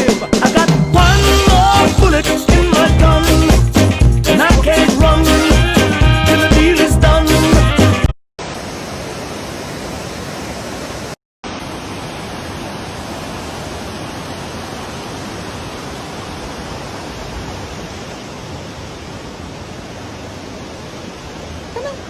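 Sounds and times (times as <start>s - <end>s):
waterfall rushing: 8.4s - 22.0s.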